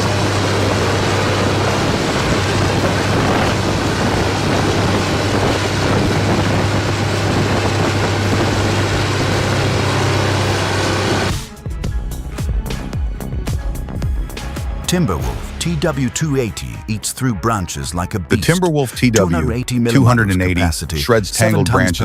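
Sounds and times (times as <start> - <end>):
grinder grinding logs: 0.0 - 11.4.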